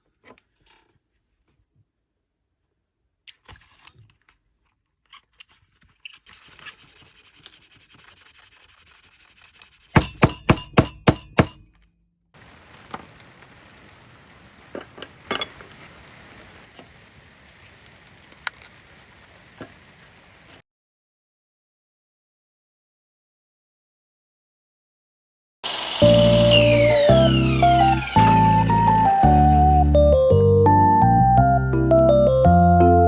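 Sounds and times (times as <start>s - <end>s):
sharp knocks: 10.0s - 11.7s
faint steady hiss: 12.4s - 20.6s.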